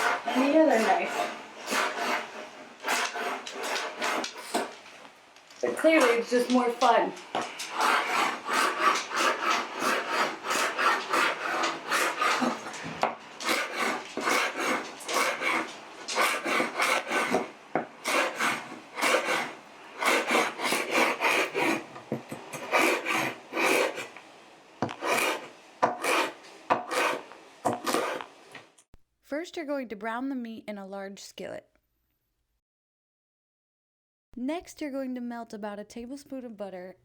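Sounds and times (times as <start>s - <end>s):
blade chopping celery on board: 0.0s - 4.7s, 5.8s - 24.1s, 24.8s - 28.3s.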